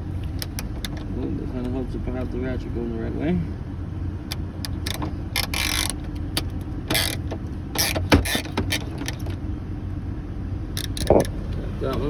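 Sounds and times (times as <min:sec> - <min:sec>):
engine idling: 0:00.0 - 0:12.0
hand ratchet clicking: 0:04.9 - 0:06.0, 0:06.9 - 0:07.2, 0:10.8 - 0:11.3.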